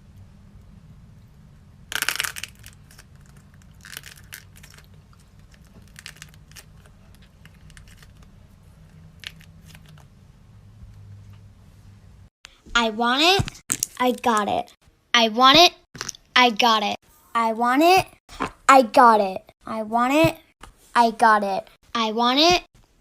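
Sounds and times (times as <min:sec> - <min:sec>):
small hard objects clattering: 0:01.9 - 0:08.2.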